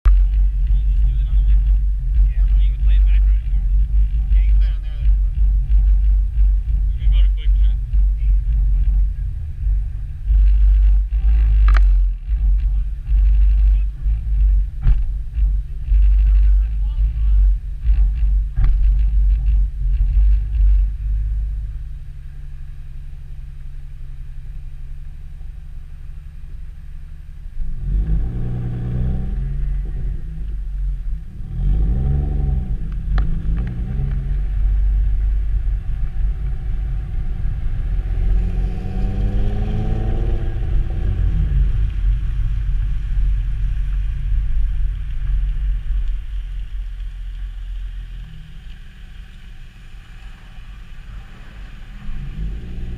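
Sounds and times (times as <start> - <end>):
car engine exhaust revving: 0.0 - 52.9.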